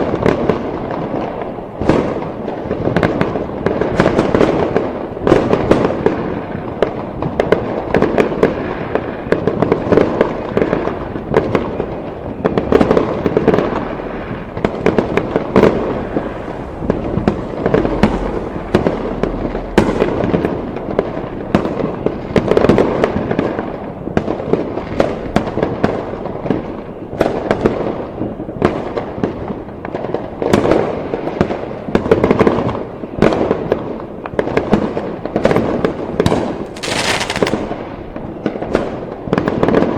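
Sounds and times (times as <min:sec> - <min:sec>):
fireworks barrage: 0:00.0 - 0:28.0, 0:35.4 - 0:38.9.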